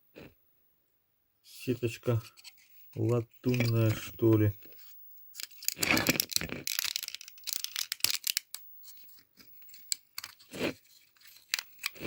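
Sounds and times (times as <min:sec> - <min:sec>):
plastic parts clicking and scratching: 0:05.4 - 0:12.0.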